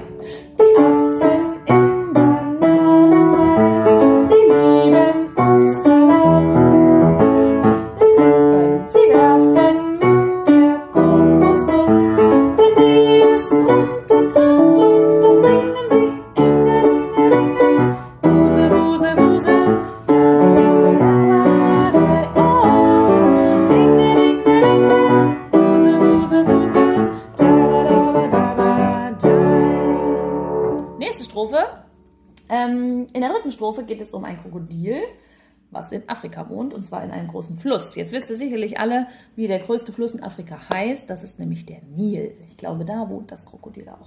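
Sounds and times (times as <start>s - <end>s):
piano playing children's song: 0.0s - 31.6s.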